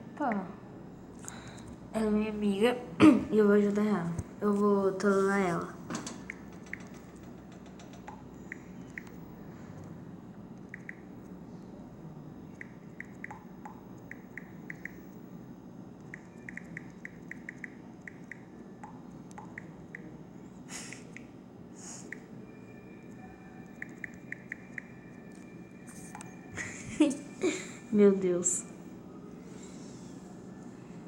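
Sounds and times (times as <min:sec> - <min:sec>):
low steady hum: 0:00.0 - 0:31.0
phone keyboard clicks: 0:06.3 - 0:09.1.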